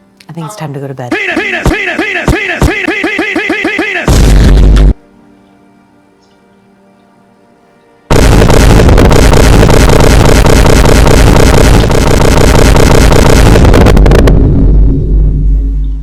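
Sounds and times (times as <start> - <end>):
distorted wall of noise: 0.0 - 5.0, 8.1 - 16.0
heavy low rumble: 8.1 - 16.0.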